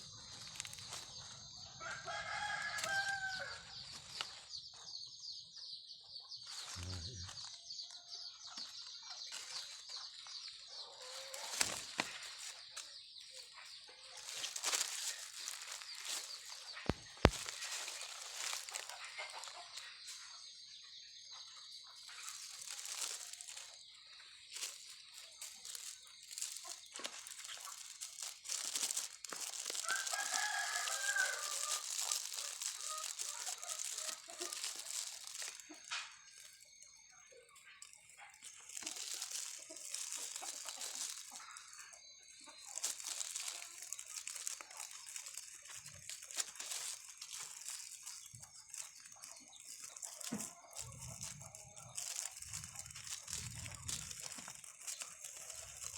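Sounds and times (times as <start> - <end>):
rooster crowing: 1.8 - 3.7, 29.8 - 32.7
faint rustling: 22.0 - 36.6, 37.6 - 41.9.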